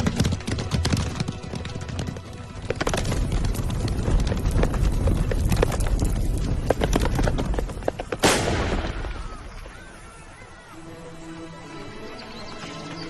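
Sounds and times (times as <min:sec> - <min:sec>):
horses hooves clattering: 0:00.0 - 0:08.5.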